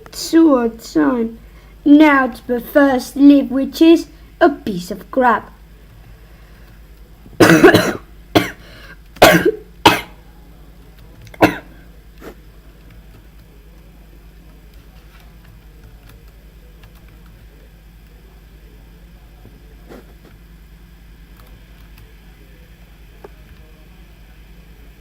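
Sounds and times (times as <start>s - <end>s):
steady low hum: 0.0s - 25.0s
person coughing: 7.4s - 10.2s, 11.4s - 12.4s
throat clearing: 7.4s - 10.2s.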